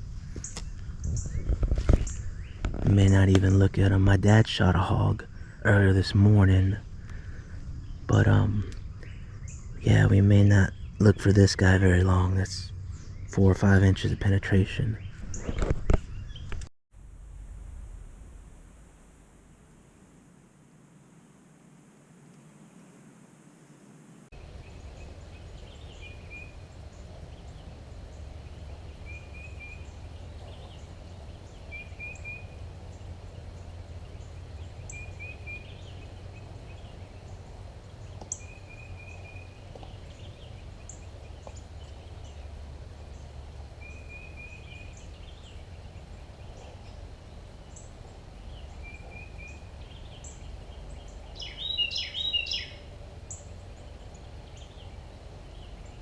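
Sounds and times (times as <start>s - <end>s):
steady low rumble: 0.0s - 21.2s, 24.3s - 56.0s
bird trill: 24.4s - 56.0s
warbling bird calls: 24.4s - 56.0s.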